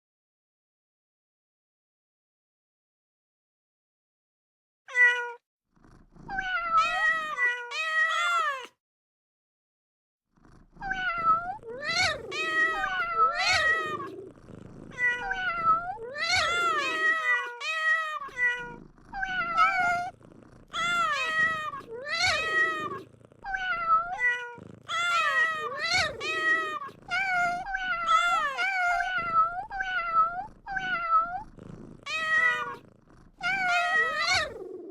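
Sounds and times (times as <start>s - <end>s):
cat meowing: 4.9s - 5.4s, 6.3s - 8.8s, 10.8s - 14.3s, 14.9s - 32.8s, 33.4s - 34.9s.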